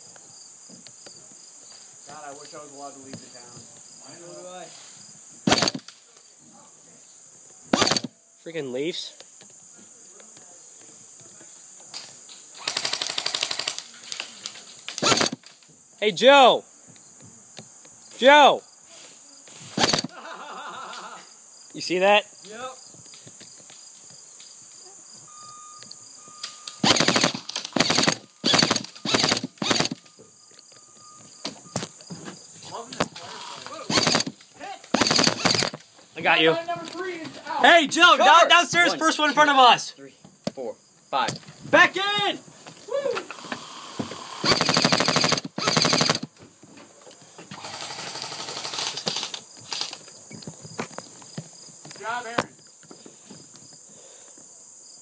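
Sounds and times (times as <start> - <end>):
insects buzzing: 0.0 - 55.0
airsoft rifle full-auto bursts: 5.5 - 5.8, 7.8 - 8.1, 12.6 - 13.9, 15.0 - 15.4, 19.8 - 20.1, 26.8 - 30.0, 33.9 - 34.4, 35.0 - 35.8, 44.4 - 46.3, 47.6 - 49.9
faint steady rattle: 47.6 - 50.0.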